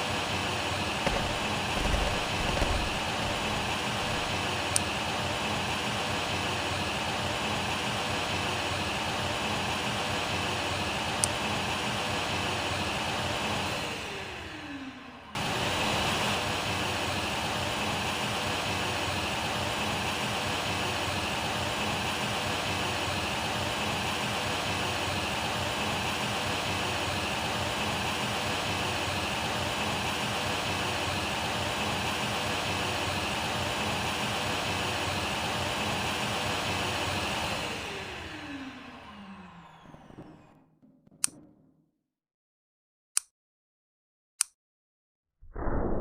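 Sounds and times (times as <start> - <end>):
vacuum cleaner running: 1.1 - 4.8, 11.4 - 19.3, 32.2 - 40.6
vacuum motor winding down: 1.1 - 4.9, 11.2 - 17.1, 33.8 - 40.9.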